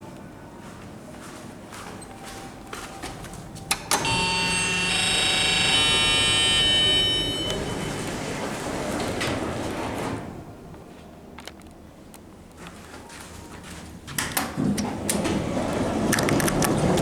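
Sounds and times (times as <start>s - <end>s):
lift clunks: 3.7s - 10.4s
lift screeching squeal: 4.0s - 8.6s.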